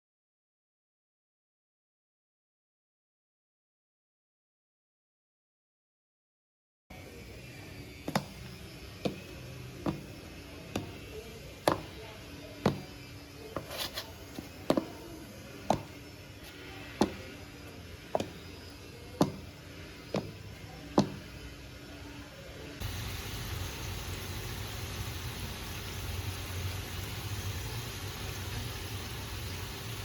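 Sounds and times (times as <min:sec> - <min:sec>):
sharp knocks: 0:19.2 - 0:19.5.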